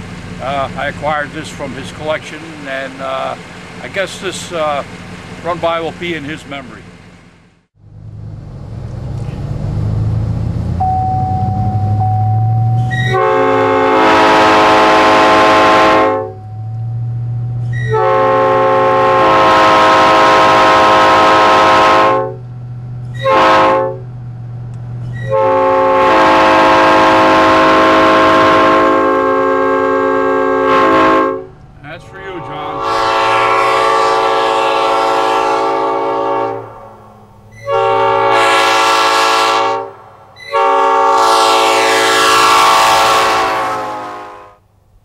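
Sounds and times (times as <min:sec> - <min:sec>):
engine rumble: 0:00.0 - 0:45.0
locomotive air horn chord: 0:12.7 - 0:17.0, 0:17.8 - 0:22.4, 0:23.2 - 0:24.0, 0:25.2 - 0:44.7.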